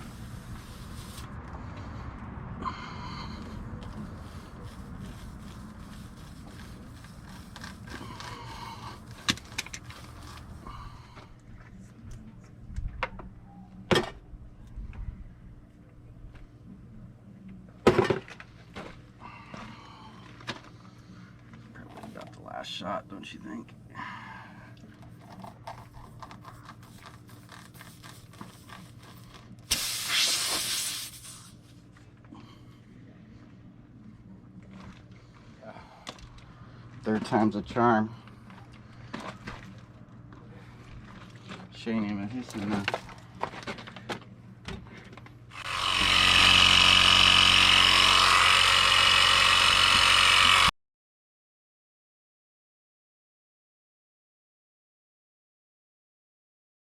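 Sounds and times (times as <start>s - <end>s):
air hissing out of tire: 0.0s - 1.3s, 29.7s - 31.6s
air compressor running: 3.4s - 11.2s, 45.5s - 50.7s.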